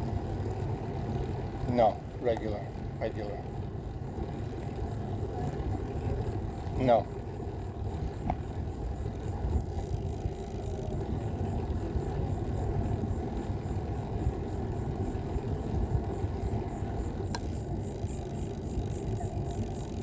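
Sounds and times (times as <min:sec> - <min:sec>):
bicycle tyres on asphalt: 0:00.0 - 0:20.0
click: 0:17.3 - 0:17.6.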